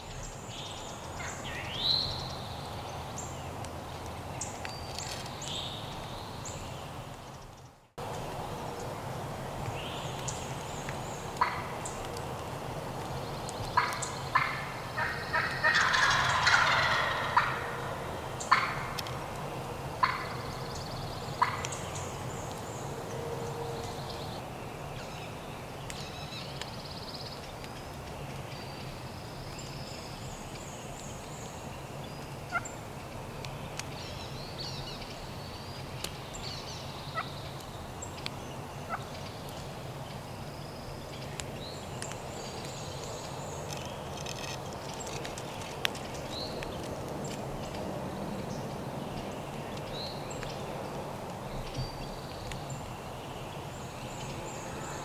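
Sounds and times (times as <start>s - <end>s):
turkey gobbling: 11.4s - 11.8s, 13.8s - 19.1s, 20.0s - 20.5s, 21.4s - 21.8s.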